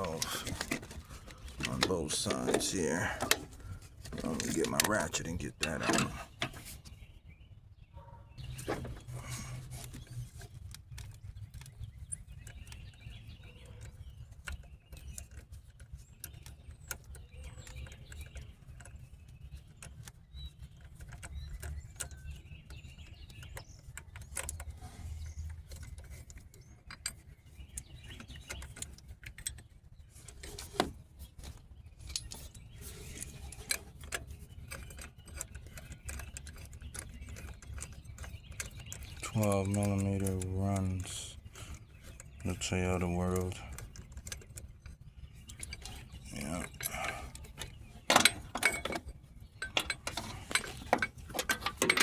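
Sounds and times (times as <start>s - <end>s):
metal tools clinking: 0.0s - 6.8s, 32.0s - 52.0s.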